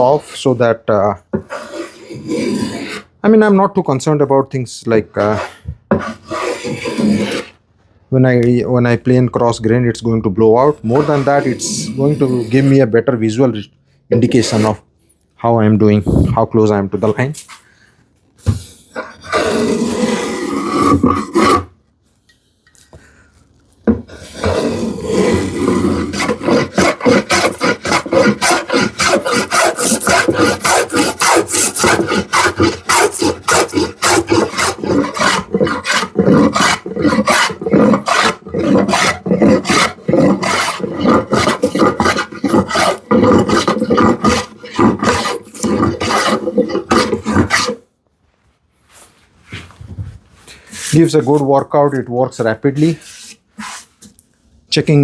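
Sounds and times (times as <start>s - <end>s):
hand plane rasping across wood: 0.0s - 0.6s, 1.3s - 3.1s, 5.2s - 7.6s, 10.8s - 12.8s, 14.1s - 14.8s, 19.0s - 21.7s, 23.9s - 47.8s.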